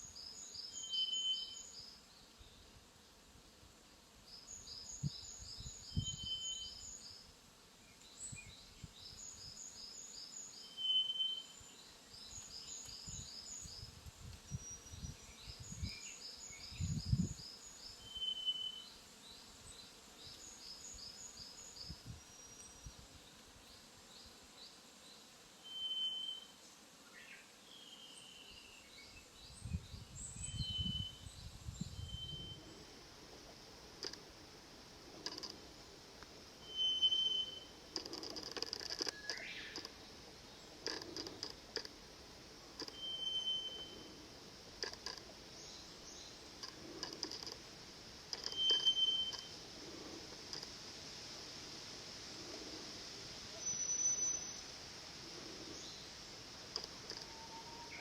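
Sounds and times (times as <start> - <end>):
birds singing: 48.4 - 49.5.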